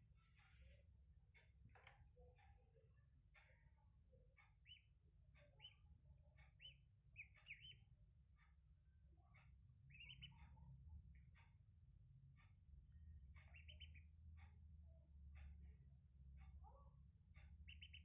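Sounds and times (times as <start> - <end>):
ducklings peeping: 4.6 - 5.8, 6.4 - 7.9, 9.8 - 10.6, 13.3 - 14.2, 17.4 - 18.0.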